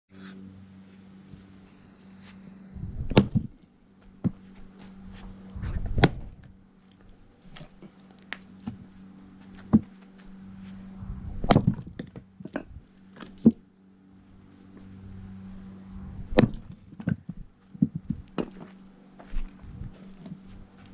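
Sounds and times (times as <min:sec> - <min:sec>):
low hum: 0:00.1 - 0:20.9
axe chopping logs: 0:03.0 - 0:03.6, 0:05.8 - 0:06.5, 0:11.4 - 0:13.6, 0:16.3 - 0:18.8.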